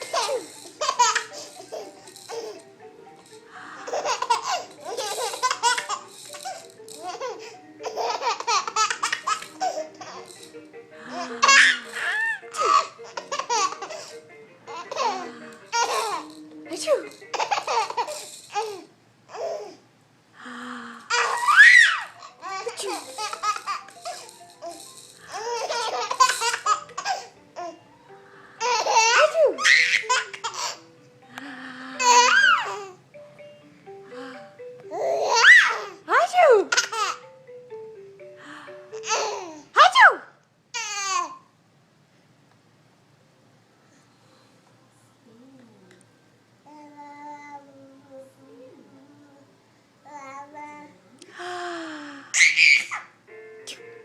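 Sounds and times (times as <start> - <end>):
baby laughing: 0.0 - 2.6, 3.7 - 10.3, 11.1 - 16.4, 17.3 - 19.8, 21.1 - 27.8, 28.6 - 30.9, 32.0 - 33.0, 34.9 - 36.0, 36.7 - 37.2, 39.0 - 39.6, 52.4 - 53.1
simple tune playing quietly: 0.0 - 18.8, 20.4 - 40.1, 53.2 - 54.0.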